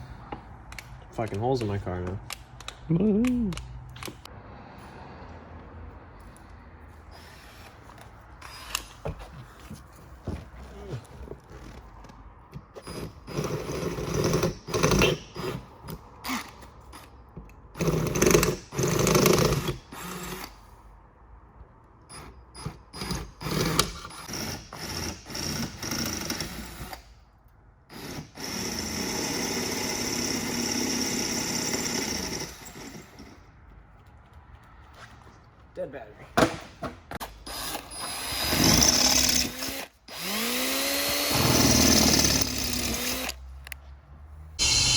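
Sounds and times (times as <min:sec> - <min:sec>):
power drill boring sheet metal: 0:27.9 - 0:33.4, 0:37.4 - 0:43.4, 0:44.6 - 0:44.9.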